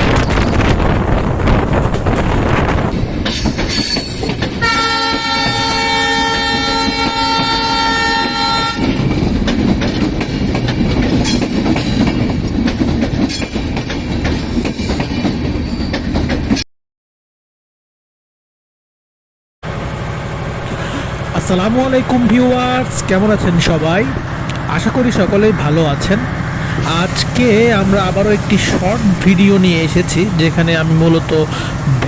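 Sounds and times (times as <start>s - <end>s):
train rumble and wheel clatter: 0.0s - 16.6s, 19.6s - 32.0s
locomotive air horn: 4.6s - 8.9s.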